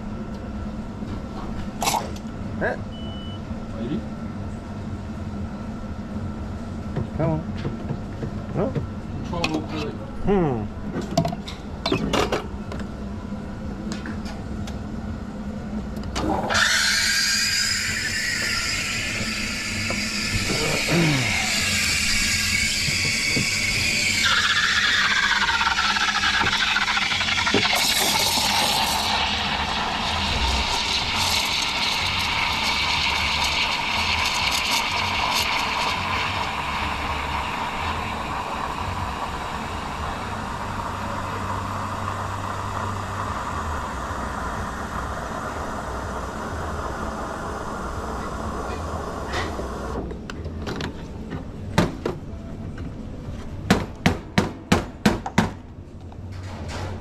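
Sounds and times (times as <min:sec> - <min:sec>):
steam wand hissing: 0:16.5 - 0:50.0.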